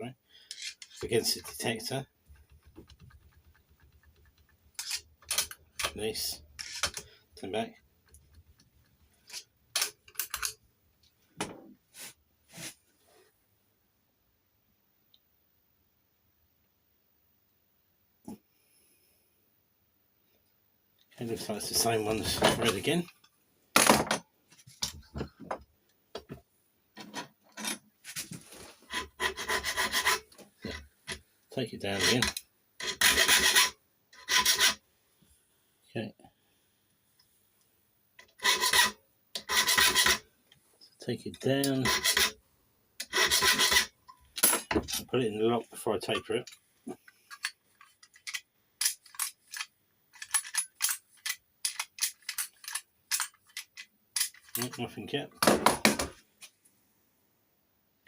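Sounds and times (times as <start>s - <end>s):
file rasping on metal: 28.9s - 30.2s, 32.0s - 34.8s, 38.4s - 40.2s, 41.8s - 42.4s, 43.0s - 43.9s.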